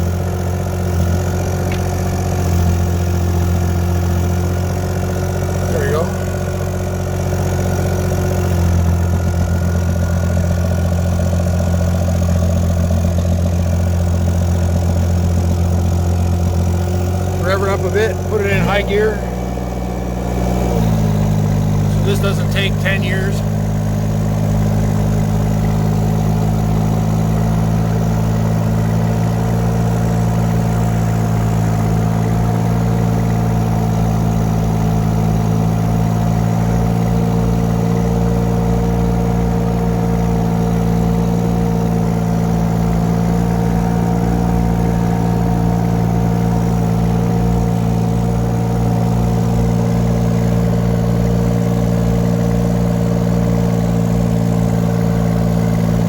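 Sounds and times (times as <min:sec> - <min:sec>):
excavator engine droning: 0:00.0 - 0:56.0.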